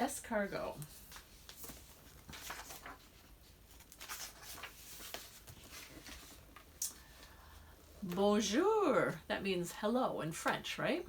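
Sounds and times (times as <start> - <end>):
paper rustling and sliding: 0.8 - 6.8.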